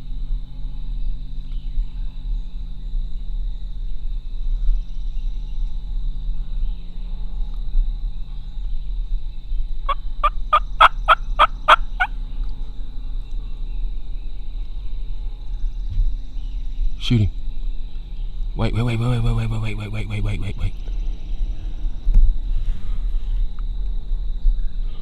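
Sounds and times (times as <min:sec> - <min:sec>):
steady low hum: 0:00.0 - 0:25.0
turkey gobbling: 0:09.9 - 0:12.1.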